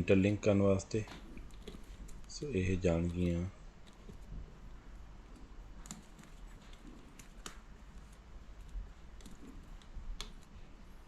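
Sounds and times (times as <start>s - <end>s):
wires and plastic connector clicking: 1.0s - 4.3s, 5.3s - 10.6s.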